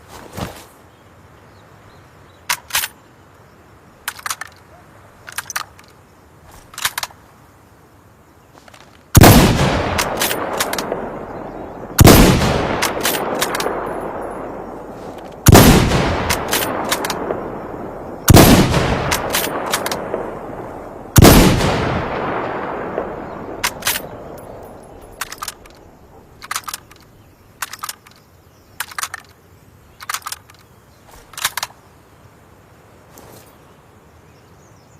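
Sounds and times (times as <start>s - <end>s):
rifle bolt clicks: 2.5s - 3.0s, 4.0s - 4.6s, 5.2s - 6.0s, 6.6s - 7.2s, 10.0s - 11.0s, 12.8s - 13.8s, 16.2s - 17.3s, 18.3s - 20.2s, 23.6s - 25.8s, 26.4s - 28.2s, 28.8s - 29.4s, 30.0s - 31.8s
rifle shots with echo: 9.2s - 26.0s.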